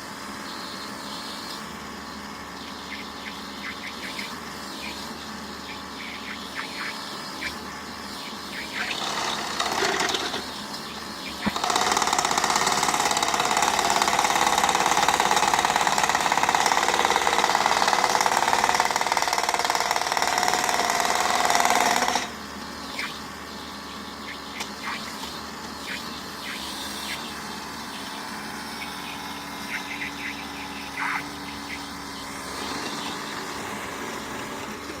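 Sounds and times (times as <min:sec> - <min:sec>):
excavator engine running: 0:00.0 - 0:35.0
hydraulic post pounder hammering: 0:08.7 - 0:10.5, 0:11.3 - 0:22.4.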